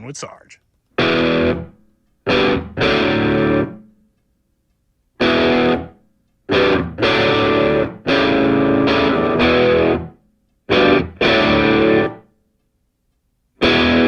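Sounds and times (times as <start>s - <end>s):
distorted electric guitar chords: 1.0s - 3.9s, 5.2s - 12.2s, 13.6s - 14.0s.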